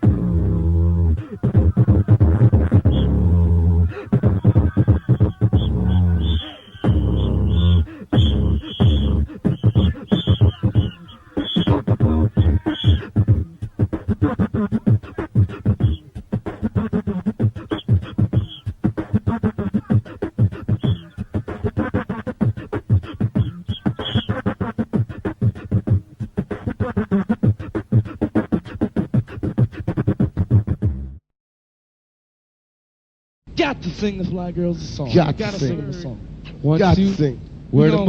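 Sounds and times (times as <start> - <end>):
beatbox kick-drum thumps: 0.0 - 31.2
beatbox snare-like clicks: 4.2 - 30.7.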